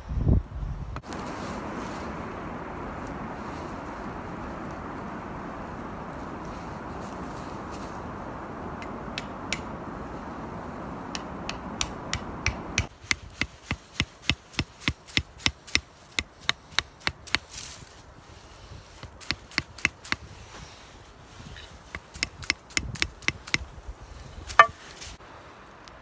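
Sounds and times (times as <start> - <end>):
steady rushing background: 1.0 - 12.9.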